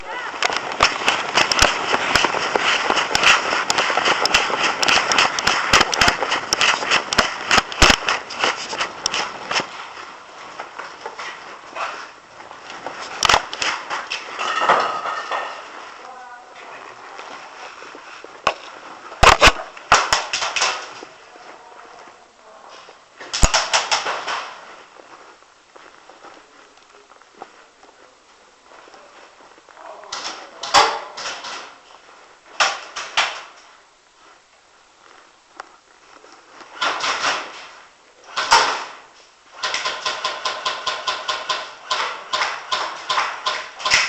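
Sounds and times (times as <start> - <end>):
airsoft guns firing: 0.0 - 11.2, 12.8 - 15.7, 18.5 - 21.1, 23.2 - 24.7, 30.1 - 31.8, 32.5 - 33.6, 36.8 - 44.0
steady hiss of noise: 0.0 - 44.0.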